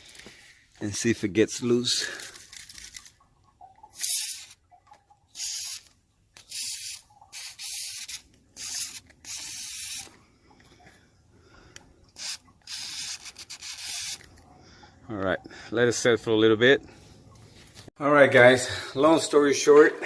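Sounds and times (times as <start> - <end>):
aerosol can spraying: 6.6 - 10.1, 12.2 - 14.2.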